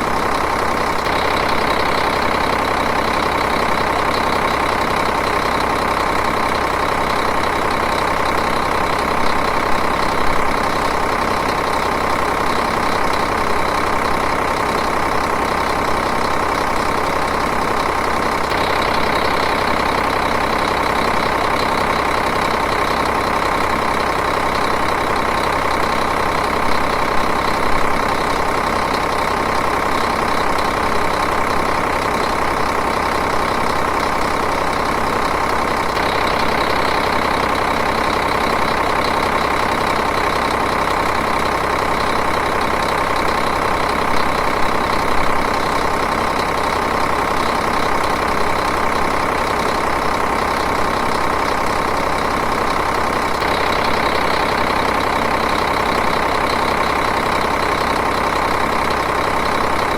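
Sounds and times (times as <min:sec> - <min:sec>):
diesel engine idling: 0:00.0 - 0:59.9.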